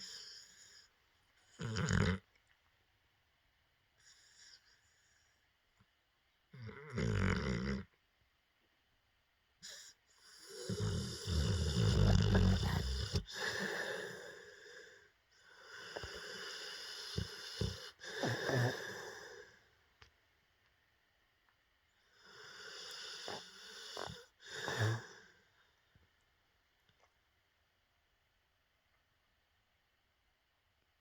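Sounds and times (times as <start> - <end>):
dog snoring: 1.4 - 2.3, 6.5 - 8.0, 9.6 - 19.5, 22.1 - 25.3.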